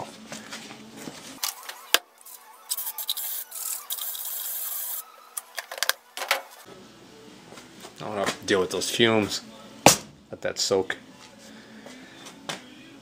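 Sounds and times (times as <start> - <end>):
aerosol can spraying: 2.7 - 5.0.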